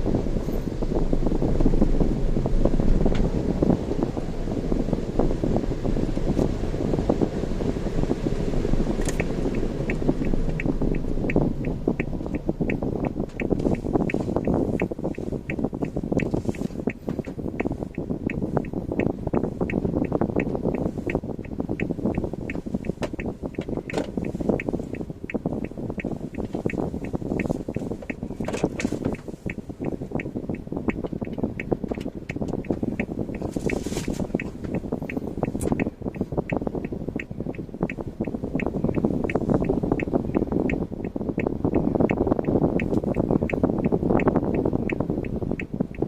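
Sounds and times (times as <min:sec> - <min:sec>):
car road rumble: 0:00.0 - 0:46.0
fast regular ticking: 0:00.0 - 0:46.0.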